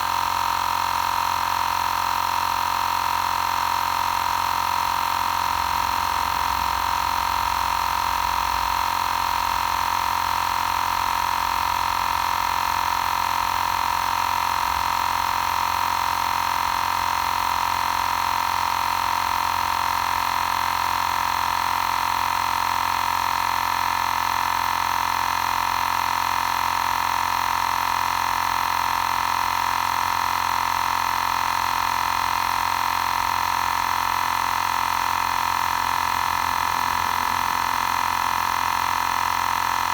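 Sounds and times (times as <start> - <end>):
air compressor whining: 23.7 - 39.9.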